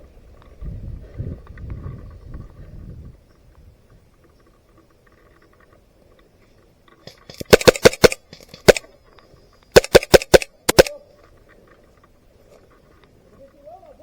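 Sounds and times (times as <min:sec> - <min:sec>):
airsoft gun shots: 0:07.2 - 0:08.9, 0:09.7 - 0:11.0.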